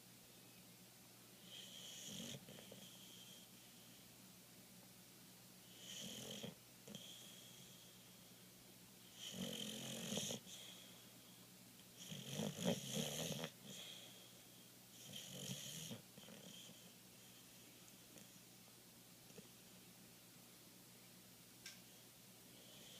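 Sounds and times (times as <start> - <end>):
dog snoring: 1.4 - 3.6, 5.7 - 8.0, 9.1 - 10.9, 12.0 - 14.3, 14.9 - 16.9, 22.5 - 22.9.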